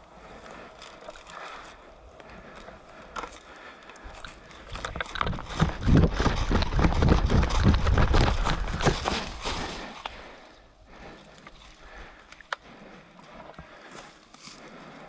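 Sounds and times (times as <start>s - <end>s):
rustling: 0.3s - 10.4s
running footsteps: 4.6s - 10.4s.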